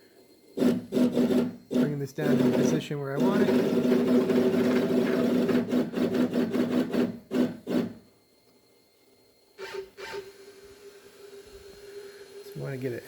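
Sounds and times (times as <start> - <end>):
faint steady whine: 0.0 - 13.0
pulsing stepper motor whine: 9.5 - 13.0.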